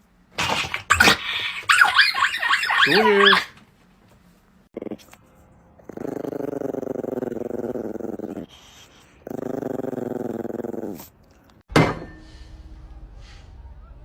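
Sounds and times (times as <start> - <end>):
dog growling: 4.7 - 5.2, 5.8 - 11.5.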